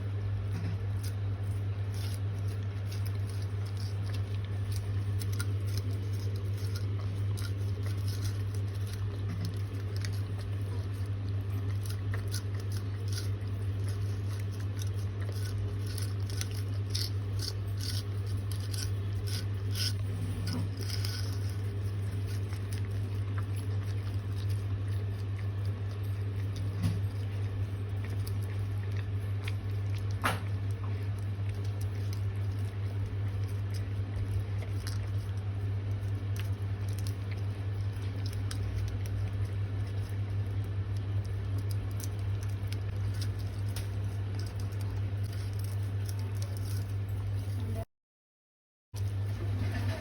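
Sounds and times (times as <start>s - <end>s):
low hum: 0.0s - 47.9s
dog licking and smacking: 21.3s - 47.5s.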